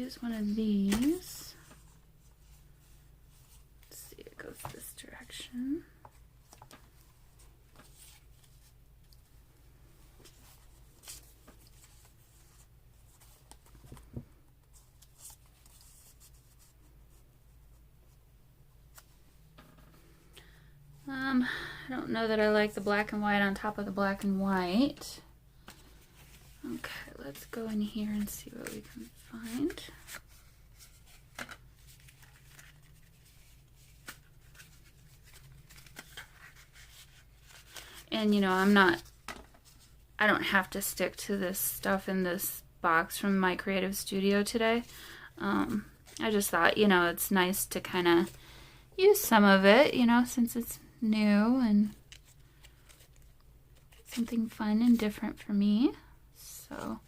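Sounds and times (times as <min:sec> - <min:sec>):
low room hum: 0:00.0 - 0:57.0
paper rustling: 0:06.1 - 0:09.2, 0:10.2 - 0:16.8, 0:25.6 - 0:40.0, 0:52.0 - 0:55.2.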